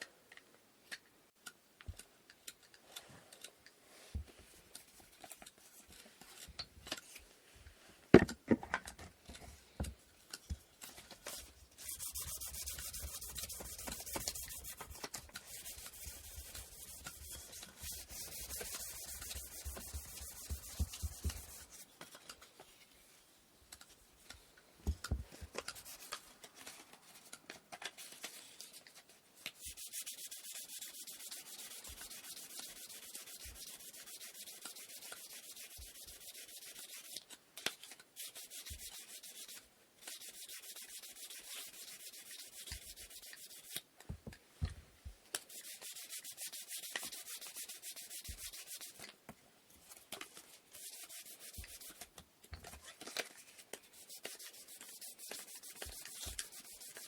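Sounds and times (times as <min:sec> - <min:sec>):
sandpaper rubbing on wood: 0:11.8 - 0:21.8, 0:29.6 - 0:37.2, 0:38.2 - 0:43.8, 0:45.5 - 0:49.0, 0:50.7 - 0:52.0, 0:53.9 - 0:57.0.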